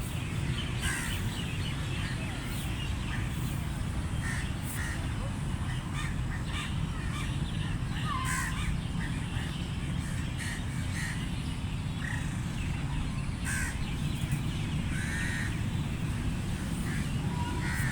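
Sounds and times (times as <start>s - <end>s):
crows cawing: 0.8s - 1.2s, 14.9s - 15.6s, 16.9s - 17.9s.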